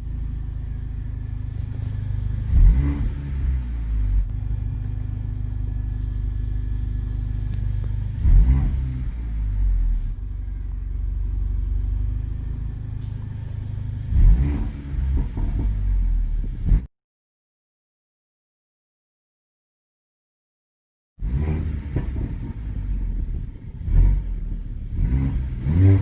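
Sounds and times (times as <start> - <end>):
car engine idling and revving: 0.0 - 16.9, 21.2 - 26.0
exhaust crackles: 0.0 - 16.9.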